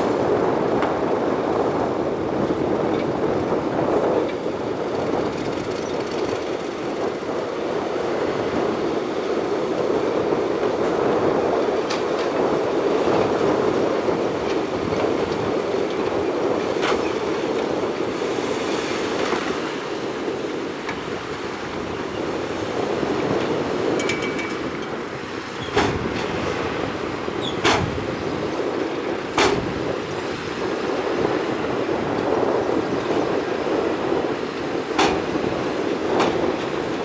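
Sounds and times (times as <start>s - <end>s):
crawler tracks clattering: 0.7s - 37.0s
sharp metallic clanks: 23.9s - 25.0s.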